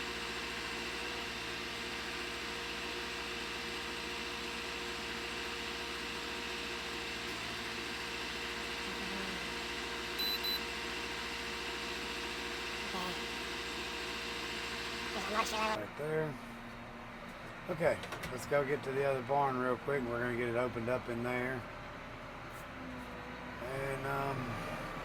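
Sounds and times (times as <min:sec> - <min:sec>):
steady mechanical hum: 0:00.1 - 0:24.3
control monitor double beep: 0:10.2 - 0:10.6.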